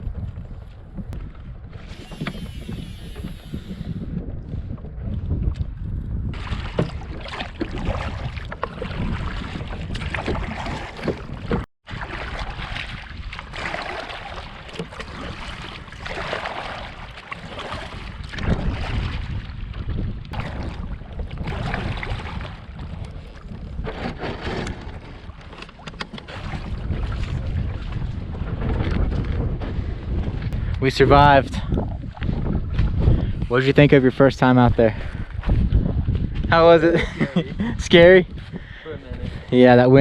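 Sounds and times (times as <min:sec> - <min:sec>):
gusty wind on microphone: 0:00.0 - 0:40.0
water splashing: 0:06.3 - 0:23.4.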